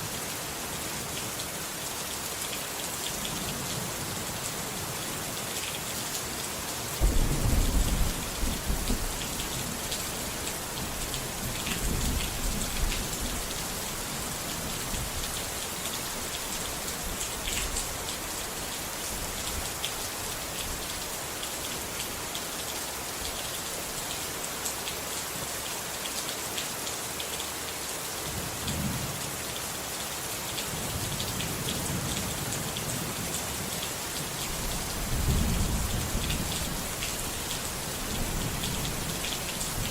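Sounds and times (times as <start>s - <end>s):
steady rain: 0.0s - 39.9s
thunder rumbling: 7.0s - 9.9s.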